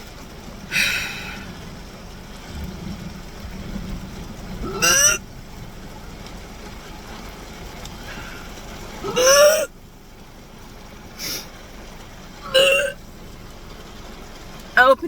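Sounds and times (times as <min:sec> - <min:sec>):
low hum inside car: 0:00.0 - 0:15.0
sharp hissing breath: 0:00.7 - 0:01.6, 0:11.2 - 0:11.6.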